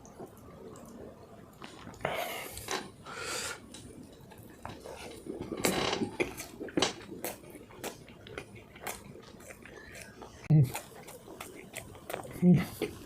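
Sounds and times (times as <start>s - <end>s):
chewing and mouth clicks: 4.2s - 13.0s.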